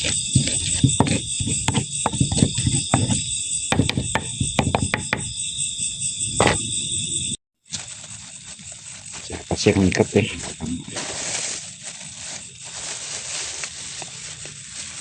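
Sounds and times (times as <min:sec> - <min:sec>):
knocks and clatters: 0:00.0 - 0:05.3
crickets chirping: 0:00.0 - 0:15.0.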